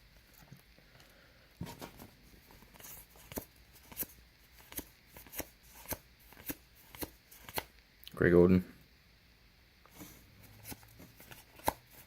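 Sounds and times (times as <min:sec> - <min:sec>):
cards sliding: 0:01.7 - 0:07.7, 0:09.9 - 0:12.0.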